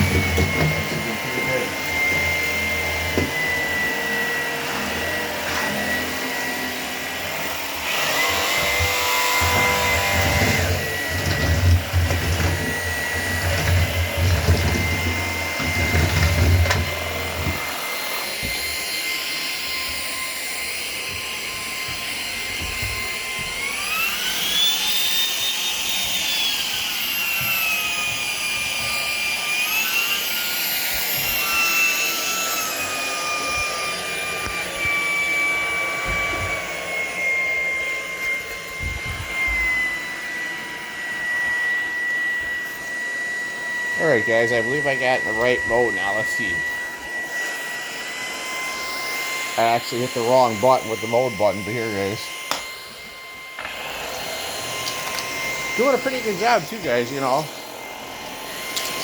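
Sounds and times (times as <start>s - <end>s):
cordless vacuum motor whine: 0.0s - 59.0s.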